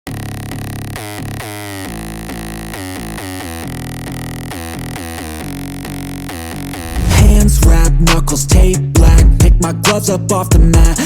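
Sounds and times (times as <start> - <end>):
electronic synthesizer music: 6.8 - 9.2.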